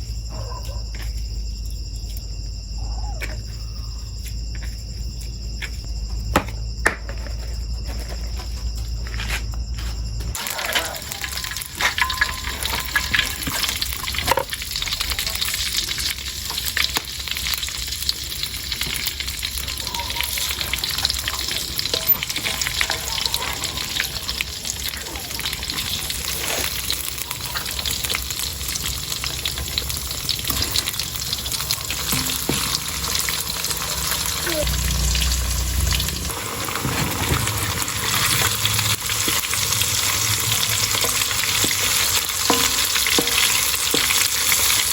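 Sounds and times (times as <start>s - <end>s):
food sizzling in hot oil: 10.3s - 44.9s.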